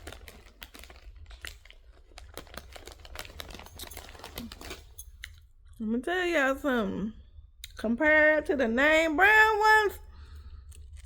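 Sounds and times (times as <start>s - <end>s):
tortilla chips crunching: 0.0s - 5.4s, 10.3s - 11.0s.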